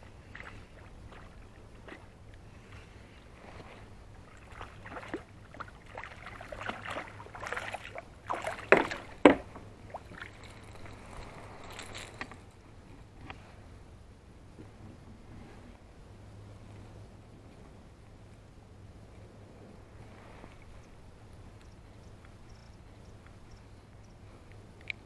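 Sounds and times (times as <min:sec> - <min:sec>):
water splashing around kayak: 0:00.0 - 0:13.6.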